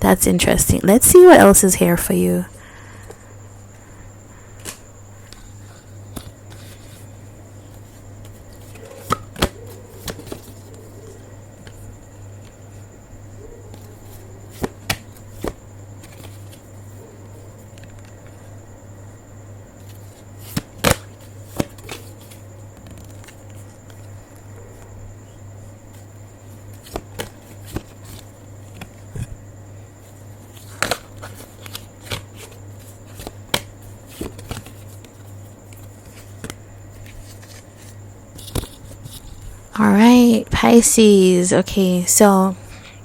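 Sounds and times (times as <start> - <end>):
cards shuffling: 7.7 - 10.8, 13.7 - 16.6, 19.8 - 24.0, 26.7 - 29.1, 30.5 - 39.4.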